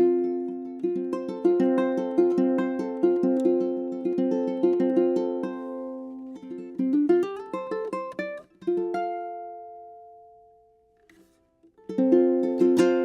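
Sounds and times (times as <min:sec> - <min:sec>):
plucked ukulele notes: 0:00.0 - 0:13.0
strummed ukulele chords: 0:00.0 - 0:13.0.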